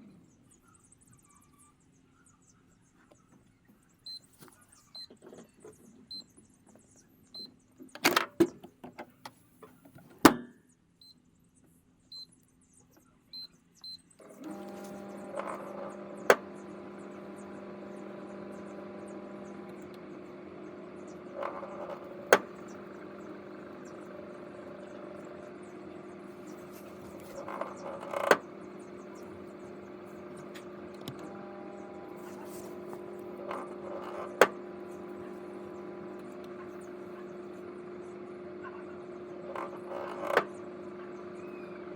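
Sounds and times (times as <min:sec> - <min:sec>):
microwave keypad beeps: 0:04.0 - 0:04.3, 0:06.1 - 0:06.3, 0:07.4 - 0:08.5, 0:12.1 - 0:12.3, 0:13.3 - 0:41.9
microwave oven humming: 0:13.0 - 0:41.9.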